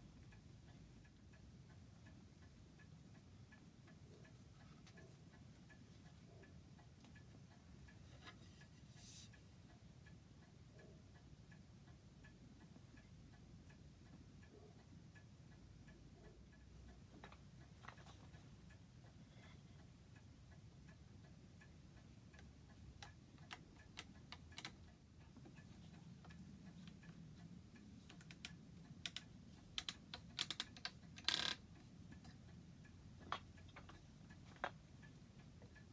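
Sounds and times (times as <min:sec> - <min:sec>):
clock ticking: 0:00.0 - 0:35.9
sharp clicks: 0:28.1 - 0:31.6.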